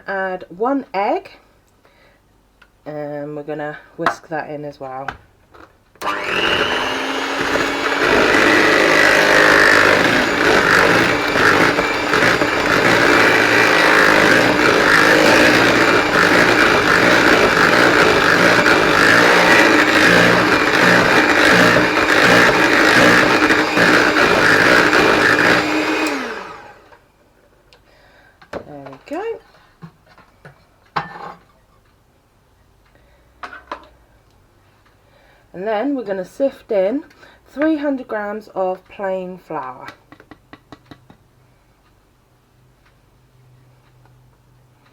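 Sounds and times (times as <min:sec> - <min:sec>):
electric hand whisk running: 0:06.0 - 0:27.0.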